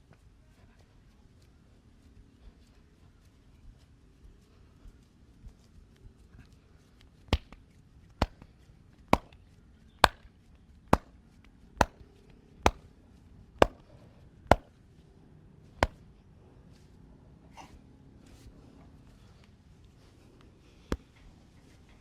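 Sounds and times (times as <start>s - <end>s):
hand slapping on body: 7.3s - 7.6s, 8.2s - 8.5s, 9.1s - 9.4s, 10.0s - 10.3s, 10.9s - 11.1s, 11.8s - 12.0s, 12.7s - 12.9s, 13.6s - 13.8s, 14.5s - 14.7s.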